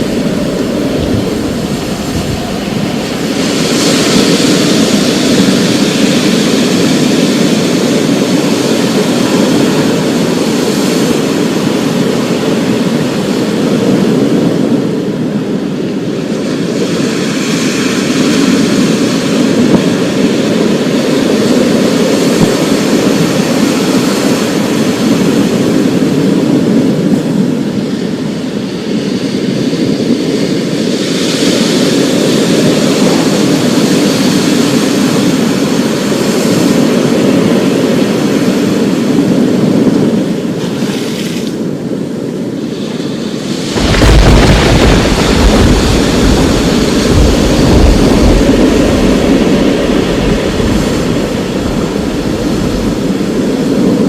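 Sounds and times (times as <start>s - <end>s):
deep thunder rumble: 0.0s - 10.0s, 43.7s - 54.0s.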